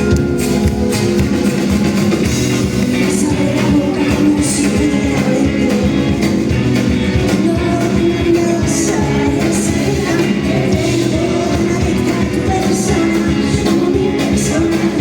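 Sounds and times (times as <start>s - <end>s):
guitar: 0.0s - 15.0s
woman singing: 2.9s - 6.5s, 7.1s - 15.0s.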